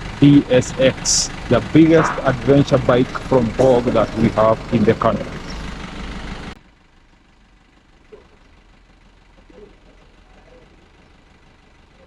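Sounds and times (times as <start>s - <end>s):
low steady rumble: 0.0s - 11.9s
faint distant voices: 0.2s - 5.6s
person speaking: 0.2s - 5.6s.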